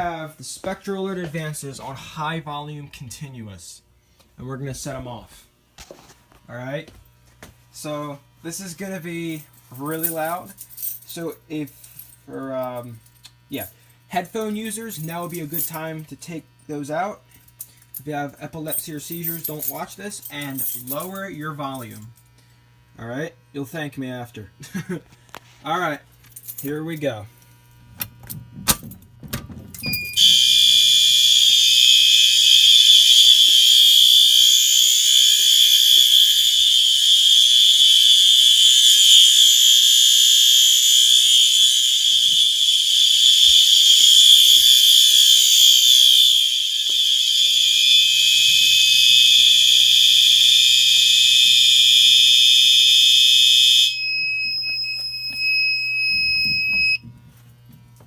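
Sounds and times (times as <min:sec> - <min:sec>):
fire alarm horns blaring: 0:13.6 - 0:15.8, 0:18.7 - 0:21.2, 0:29.8 - 0:57.1.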